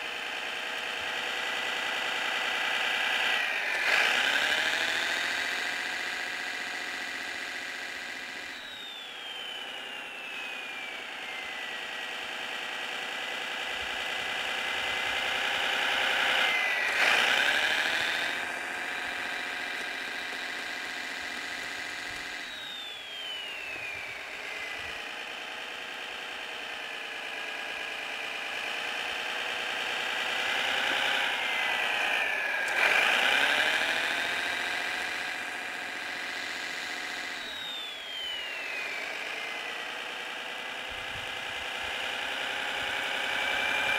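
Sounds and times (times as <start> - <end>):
simulated engine from small speaker: 0.0 - 43.9
high whistle falling in pitch: 8.5 - 11.5, 22.4 - 24.4.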